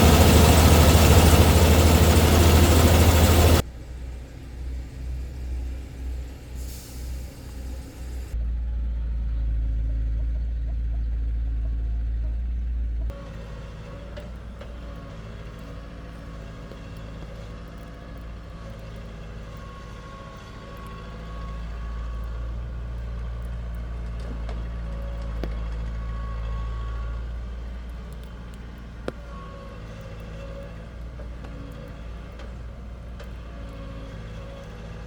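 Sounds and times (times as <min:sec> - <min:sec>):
diesel engine running: 0:00.0 - 0:35.0.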